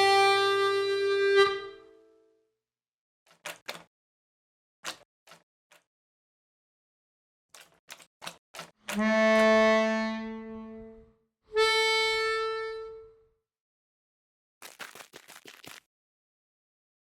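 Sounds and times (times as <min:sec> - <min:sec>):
long held instrument notes: 0:00.0 - 0:02.3, 0:09.0 - 0:13.3.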